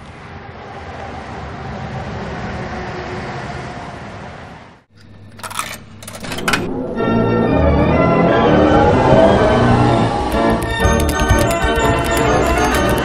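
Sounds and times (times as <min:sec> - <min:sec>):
sharp knocks: 0:10.3 - 0:13.0.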